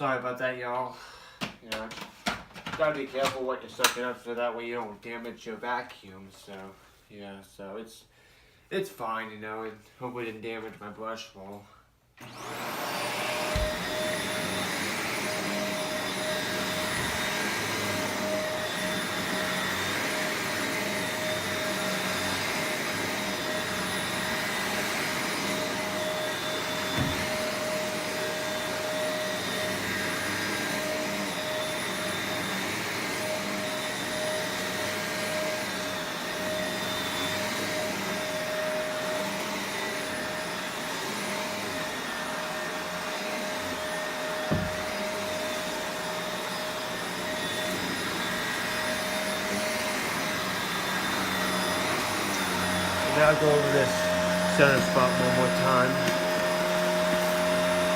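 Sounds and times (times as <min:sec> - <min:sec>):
vacuum cleaner running: 0:12.2 - 0:57.9.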